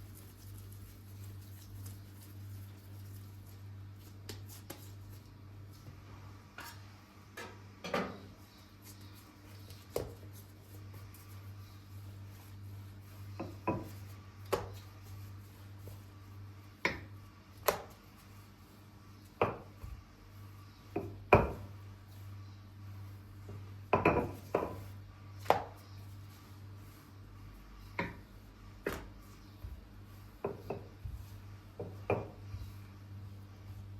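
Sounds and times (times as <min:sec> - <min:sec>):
steady low hum: 0:00.0 - 0:33.9.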